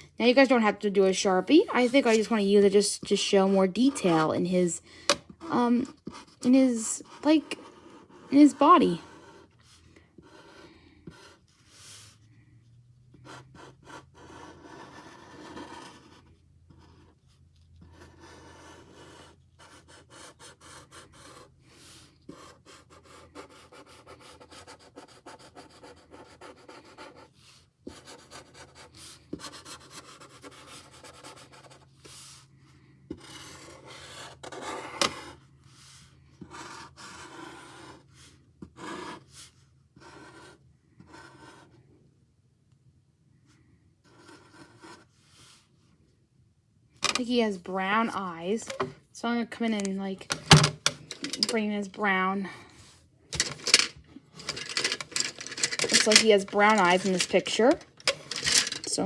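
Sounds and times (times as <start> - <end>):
marker scratching on paper: 1.4 - 4.4, 5.5 - 12.2, 13.2 - 27.3, 27.9 - 32.4, 36.4 - 41.8, 56.1 - 57.8.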